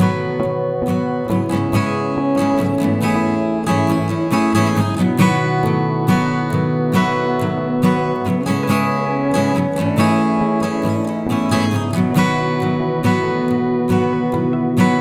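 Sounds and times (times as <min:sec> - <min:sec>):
acoustic guitar strumming: 0:00.0 - 0:15.0.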